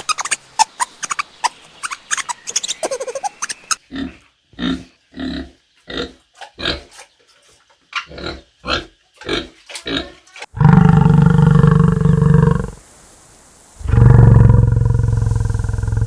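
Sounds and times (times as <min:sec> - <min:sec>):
animal grunting: 0:09.9 - 0:12.8, 0:13.8 - 0:16.0
animal roaring call: 0:10.6 - 0:12.8, 0:13.8 - 0:16.0.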